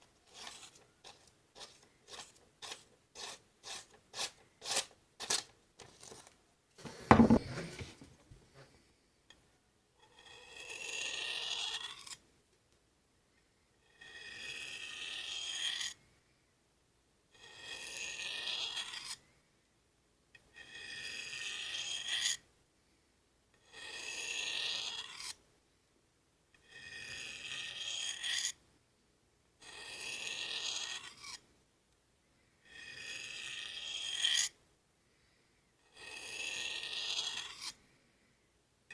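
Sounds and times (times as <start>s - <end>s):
knife rasping on sharpening steel: 0.3s - 6.2s, 17.4s - 19.2s, 23.7s - 25.4s, 36.0s - 37.8s
loud thump: 7.0s - 7.8s.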